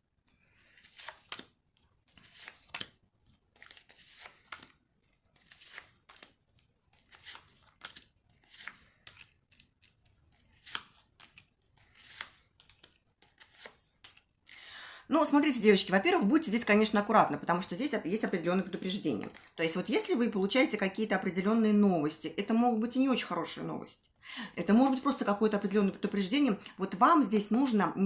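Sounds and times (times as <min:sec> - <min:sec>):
cards being shuffled: 0:00.3 - 0:14.4.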